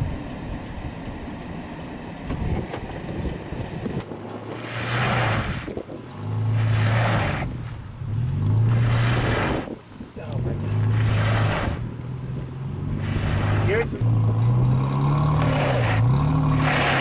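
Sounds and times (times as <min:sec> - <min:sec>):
low engine rumble: 0:00.0 - 0:17.0
wheels spinning in snow hiss: 0:00.1 - 0:17.0
vehicle engine revving hard: 0:04.6 - 0:17.0.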